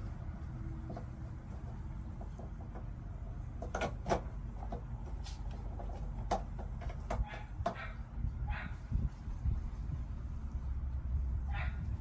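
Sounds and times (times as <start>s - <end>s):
plumbing parts and tools clicking: 0.8s - 7.9s.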